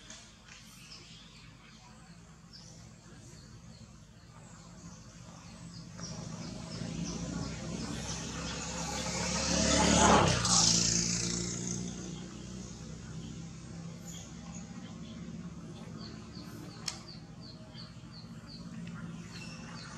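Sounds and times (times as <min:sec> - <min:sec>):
vehicle engine passing: 0:04.6 - 0:19.9.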